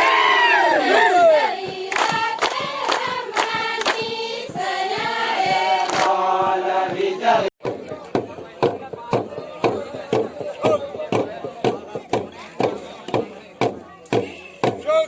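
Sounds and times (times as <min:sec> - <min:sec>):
group of voices singing: 0:00.0 - 0:07.6
sharp percussive strikes: 0:00.8 - 0:15.0.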